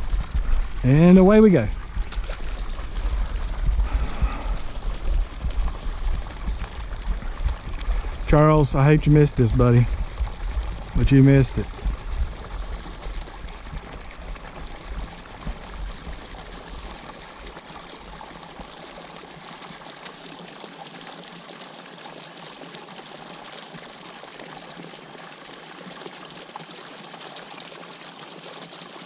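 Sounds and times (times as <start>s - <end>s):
low rumble: 0.0s - 16.9s
water pouring into a pond: 0.0s - 29.0s.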